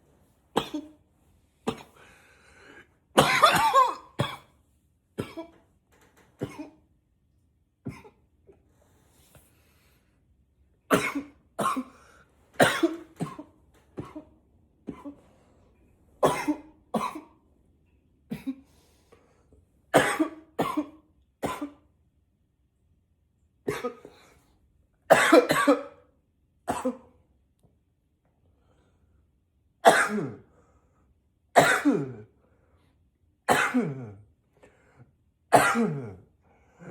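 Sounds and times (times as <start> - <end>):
man coughing: 3.2 - 4.5, 10.9 - 12.0, 12.6 - 14.3, 16.2 - 17.3, 20.0 - 21.9, 25.1 - 26.0, 29.8 - 30.5, 31.6 - 32.3, 33.5 - 34.2, 35.5 - 36.9.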